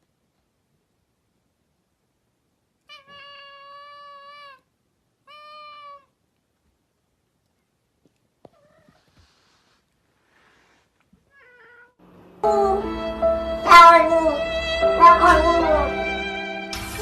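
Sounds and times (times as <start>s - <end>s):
cat meowing: 2.8s - 6.2s, 8.5s - 9.2s, 11.2s - 12.0s.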